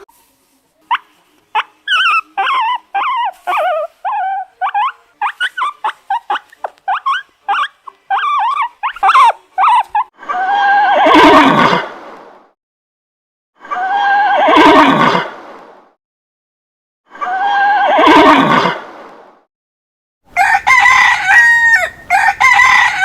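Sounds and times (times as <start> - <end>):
dog whimpering and yelping: 0.9 - 11.2.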